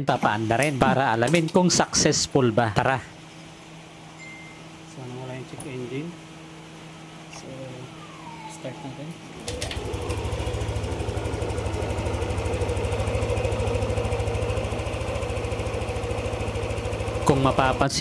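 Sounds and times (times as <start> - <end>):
scooter engine starting and idling: 9.4 - 18.0.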